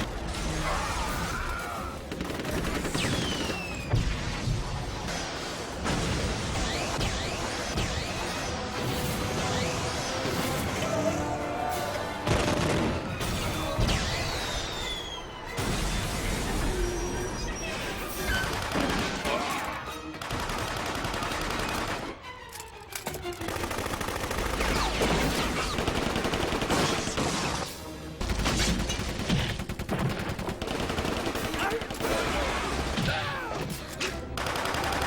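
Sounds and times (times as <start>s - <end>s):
rapid cartoon gunfire: 0.0s - 10.8s, 12.2s - 14.5s, 18.2s - 22.2s, 23.4s - 33.4s, 34.4s - 35.0s
background music: 0.0s - 35.0s.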